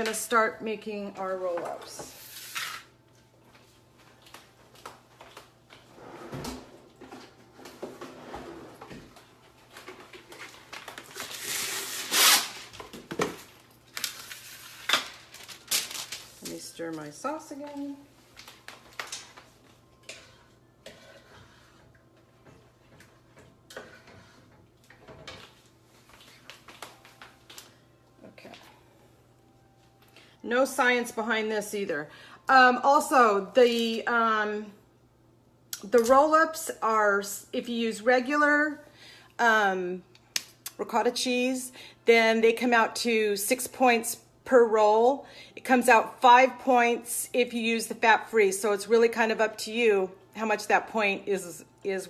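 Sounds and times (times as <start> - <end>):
rustling scrape: 2.1 - 2.9.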